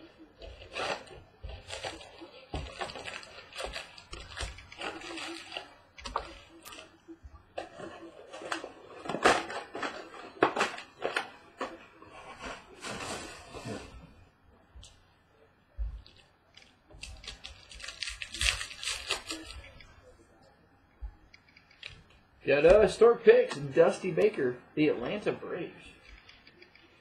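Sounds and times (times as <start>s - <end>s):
card packaging being torn open: 17.0s - 19.7s.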